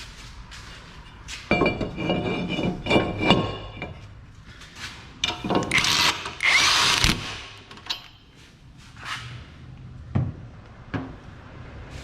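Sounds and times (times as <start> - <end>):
metallic clanks: 1.0 - 4.1, 5.2 - 6.4
power tool whirring: 5.7 - 7.5.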